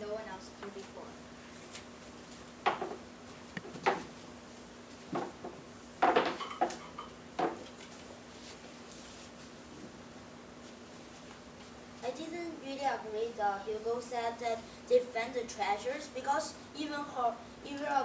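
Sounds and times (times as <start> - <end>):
sharp knocks and clatters: 2.6 - 3.0, 3.6 - 4.1, 5.1 - 7.8.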